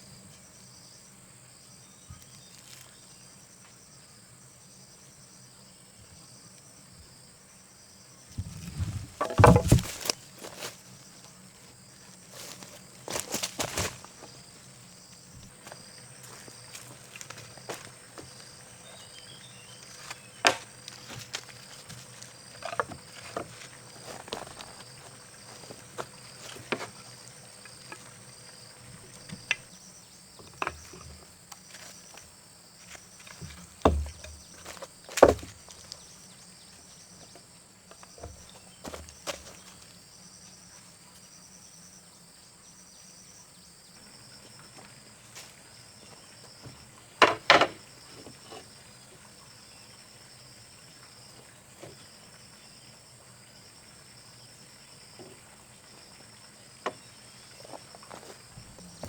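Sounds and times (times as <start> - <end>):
insects trilling: 0.0 - 59.0
sharp knocks: 8.4 - 10.2, 33.8 - 34.4, 47.2 - 47.8.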